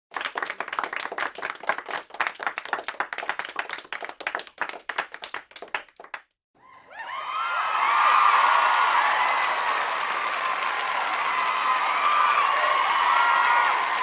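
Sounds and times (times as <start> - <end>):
group of people clapping: 0.1 - 6.4, 7.3 - 14.0
crowd cheering: 6.6 - 14.0.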